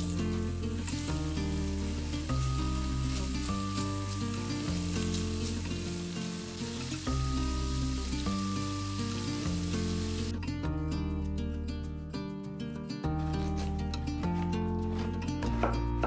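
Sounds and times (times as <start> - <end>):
food sizzling in a pan: 0.0 - 10.3
background music: 0.0 - 16.0.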